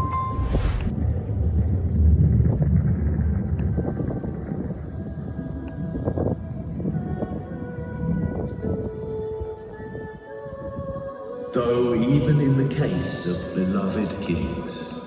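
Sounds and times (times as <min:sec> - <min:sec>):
deep low rumble: 0:00.0 - 0:07.6.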